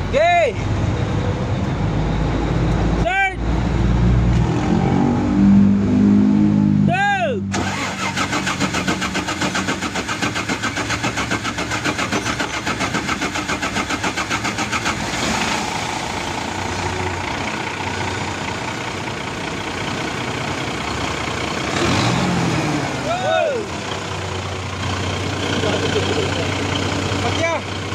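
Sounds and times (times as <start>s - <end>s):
diesel engine running: 0.0s - 27.9s
diesel engine cranking by starter: 7.5s - 27.9s.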